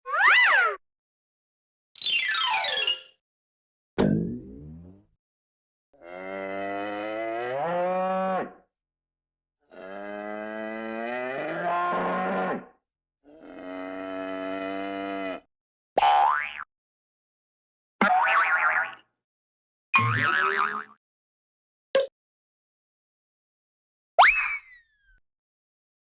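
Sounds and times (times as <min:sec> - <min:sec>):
cow mooing: 0:06.0 - 0:08.6, 0:09.7 - 0:12.7, 0:13.3 - 0:15.5.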